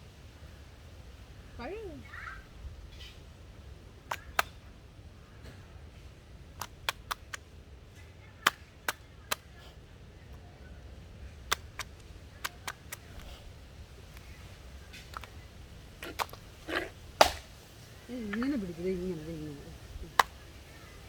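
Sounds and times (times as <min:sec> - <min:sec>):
wet clothes slapping a surface: 0:04.0 - 0:04.6, 0:06.6 - 0:07.5, 0:11.4 - 0:13.4, 0:14.0 - 0:17.7, 0:20.0 - 0:20.7.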